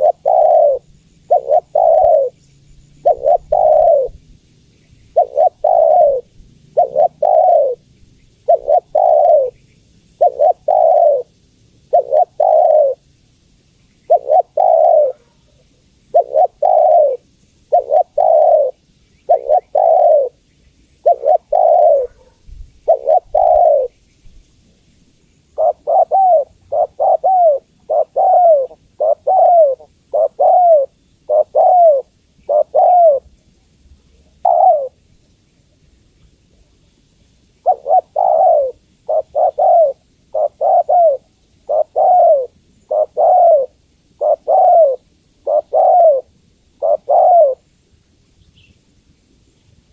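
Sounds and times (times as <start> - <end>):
dove cooing: 0.0 - 2.4, 3.0 - 4.3, 5.1 - 9.6, 10.2 - 13.1, 14.1 - 20.4, 21.0 - 24.0, 25.6 - 33.4, 34.1 - 35.0, 37.6 - 47.7.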